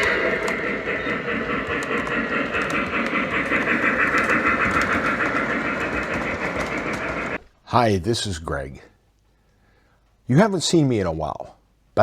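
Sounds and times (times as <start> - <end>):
train rolling rumble: 0.0 - 7.5.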